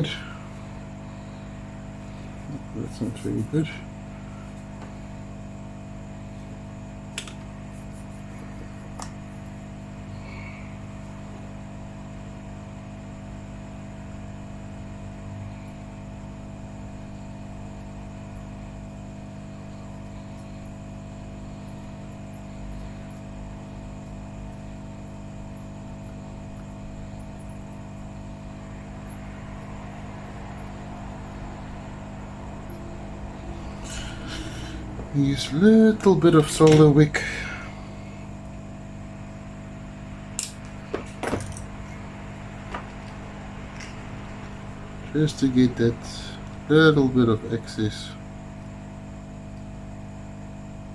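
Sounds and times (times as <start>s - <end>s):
electrical hum: 0.0s - 50.9s.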